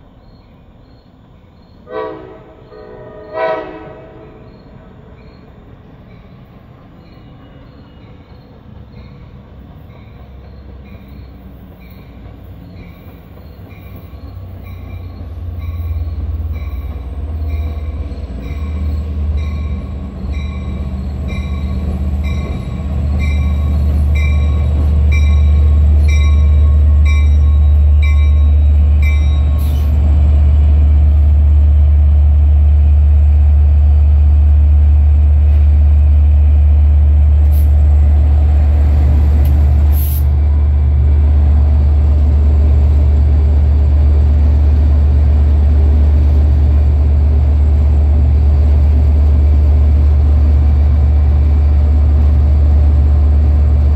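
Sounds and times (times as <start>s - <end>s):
diesel locomotive engine running: 0.0s - 53.9s
locomotive bell ringing: 9.0s - 29.8s.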